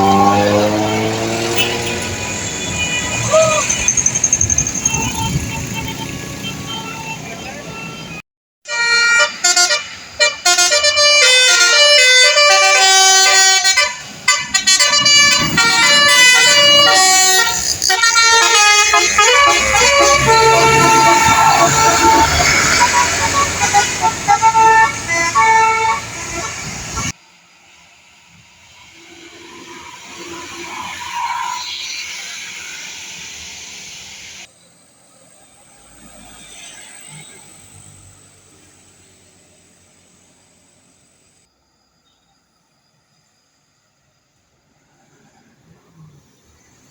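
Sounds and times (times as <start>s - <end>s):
faint vehicle passing: 0.0s - 2.6s
multi-tone bus horn tune: 0.0s - 3.6s, 4.6s - 7.1s, 8.6s - 27.2s
large vehicle passing close: 18.6s - 40.4s.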